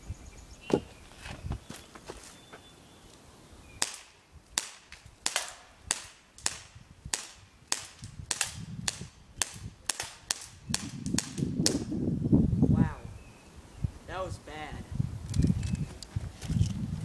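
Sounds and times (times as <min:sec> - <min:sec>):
bb pistol shots: 0:03.8 - 0:11.8.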